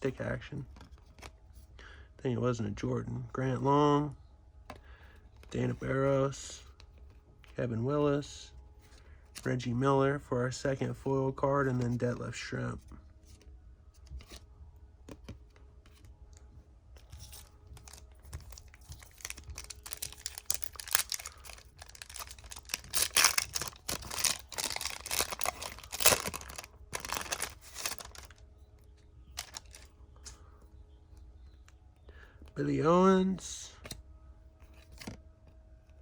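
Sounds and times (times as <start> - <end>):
wrapper tearing and crinkling: 17.0 - 28.4, 29.4 - 29.9.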